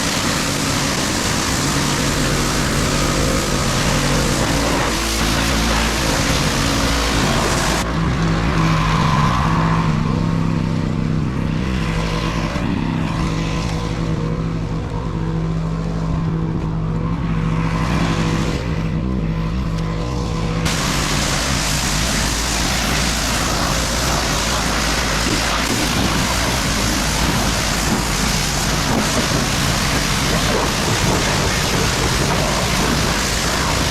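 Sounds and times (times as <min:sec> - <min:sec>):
water jet spraying: 0:00.0 - 0:10.5, 0:20.6 - 0:33.9
pressure washer motor hum: 0:00.0 - 0:33.9.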